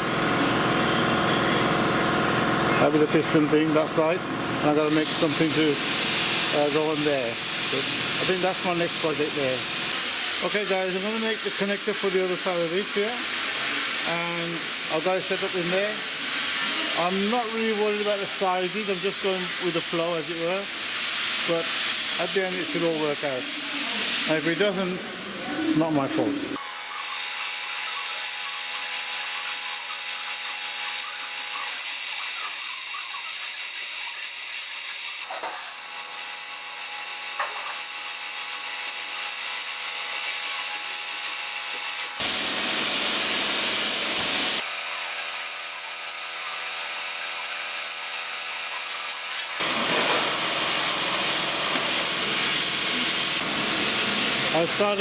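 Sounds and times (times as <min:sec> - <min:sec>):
metal lathe motor whining: 0:26.6 - 0:35.4.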